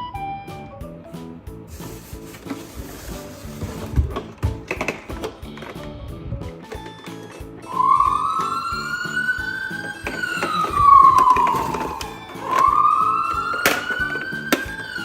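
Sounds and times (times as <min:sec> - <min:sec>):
background music: 0:00.0 - 0:15.0
toy ambulance siren wailing: 0:07.2 - 0:15.0.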